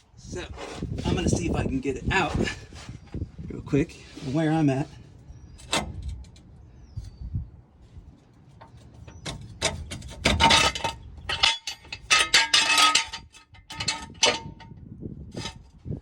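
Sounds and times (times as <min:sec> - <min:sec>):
metal clinks and scraping: 0:08.6 - 0:15.7.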